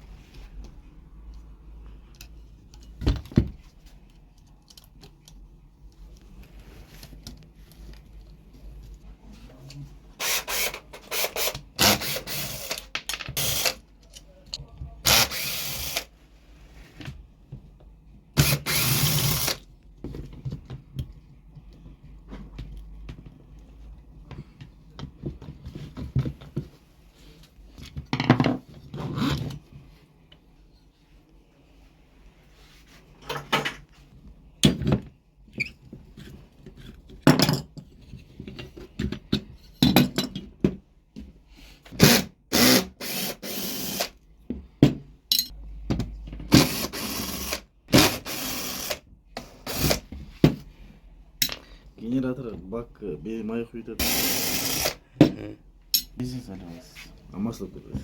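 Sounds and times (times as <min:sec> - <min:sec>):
tools and parts clattering: 0:36.6 - 0:40.8, 0:45.3 - 0:45.6.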